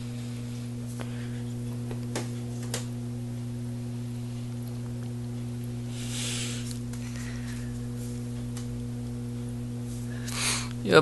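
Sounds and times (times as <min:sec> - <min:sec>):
electrical mains hum: 0:00.0 - 0:11.0.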